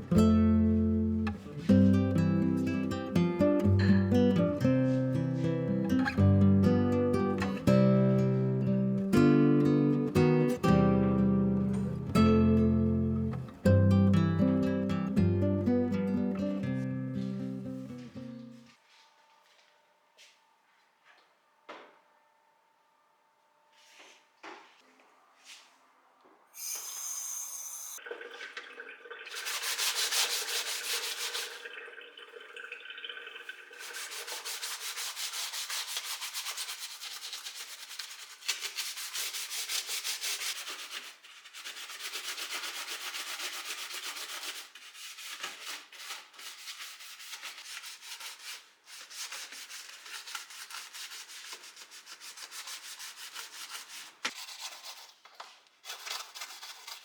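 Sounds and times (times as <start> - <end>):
rapid scrubbing of a surface: 29.3 - 31.7, 33.7 - 55.2, 55.8 - 57.0.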